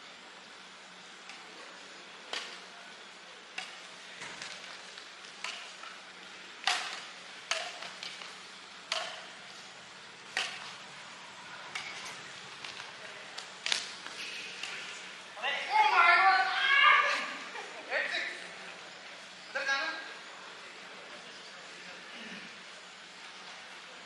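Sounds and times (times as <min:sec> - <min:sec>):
racket hitting shuttlecock: 0:03.5 - 0:04.8, 0:05.4 - 0:06.0, 0:06.6 - 0:09.4, 0:10.3 - 0:11.0, 0:11.6 - 0:13.0, 0:13.6 - 0:15.0.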